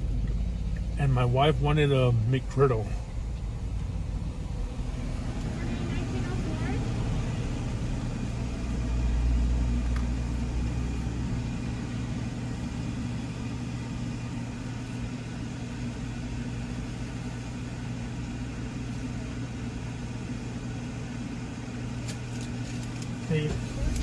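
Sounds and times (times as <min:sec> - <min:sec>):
car engine hum from inside cabin: 0:00.0 - 0:24.0.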